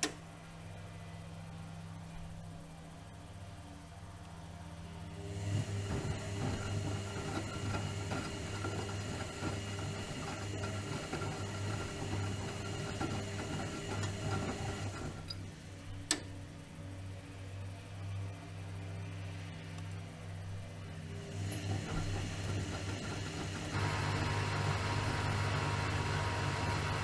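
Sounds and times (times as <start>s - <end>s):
washing machine drum turning: 5.3s - 15.4s, 21.2s - 27.0s.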